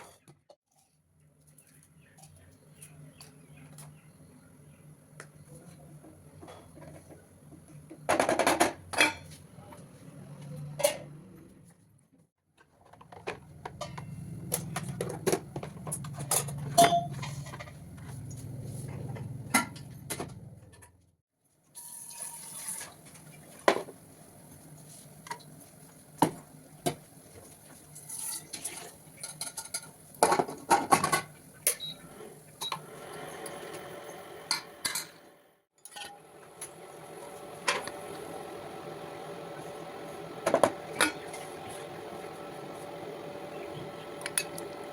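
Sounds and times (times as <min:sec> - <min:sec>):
metal utensils and pots clinking: 0:08.1 - 0:09.4, 0:10.8 - 0:11.1, 0:12.9 - 0:20.9, 0:27.4 - 0:33.8, 0:34.5 - 0:38.0, 0:40.4 - 0:41.9, 0:44.2 - 0:44.9.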